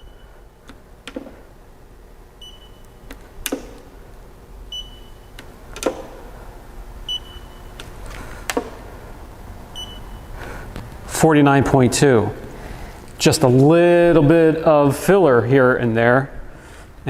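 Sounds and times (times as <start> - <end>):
short high beeps: 0.0 - 0.3, 9.8 - 10.3.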